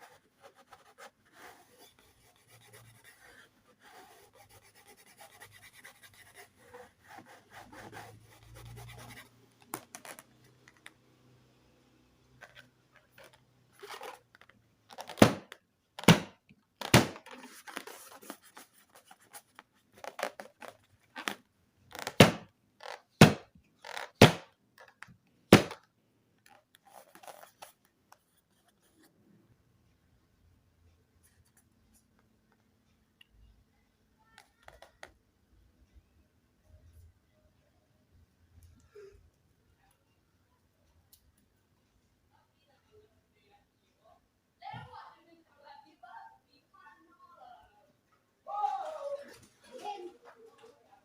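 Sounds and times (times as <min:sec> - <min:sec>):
rubbing and scratching: 0:00.0 - 0:11.0, 0:12.4 - 0:25.8, 0:26.5 - 0:29.2
soft rustling: 0:17.2 - 0:22.0.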